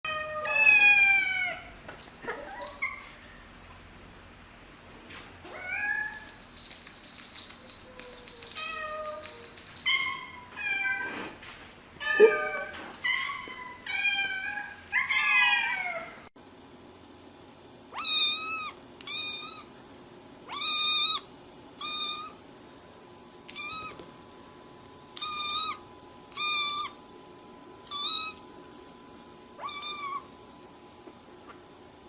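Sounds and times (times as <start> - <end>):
cats meowing: 0.1 - 1.7, 12.0 - 16.2, 18.0 - 19.7, 23.5 - 24.0, 29.6 - 30.3.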